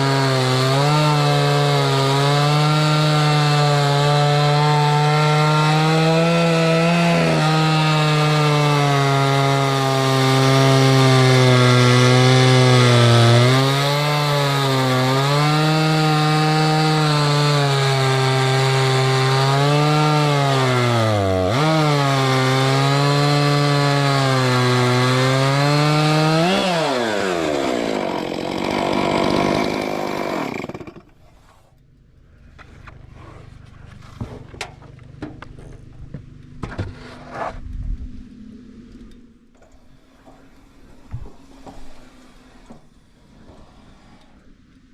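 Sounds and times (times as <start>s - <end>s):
chainsaw ripping a log: 0.0s - 31.3s.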